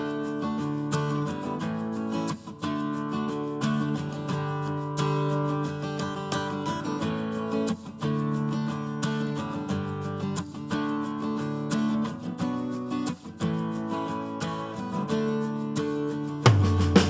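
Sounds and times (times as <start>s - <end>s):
heavy bass and beat: 16.5s - 17.0s.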